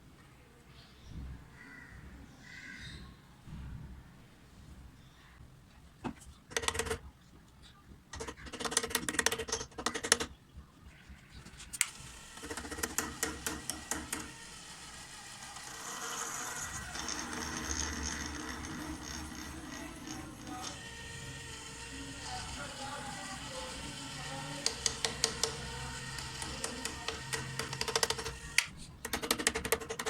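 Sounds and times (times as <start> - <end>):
gears clicking and rattling: 11.8 - 30.0
small motor turning gears: 11.8 - 30.0.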